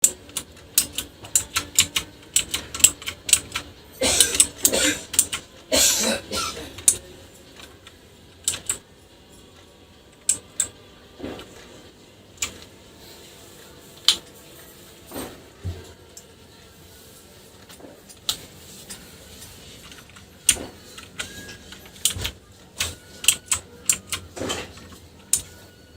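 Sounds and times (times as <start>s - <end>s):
mechanical keyboard clacking: 0.0s - 5.5s, 7.6s - 8.8s, 19.8s - 24.6s.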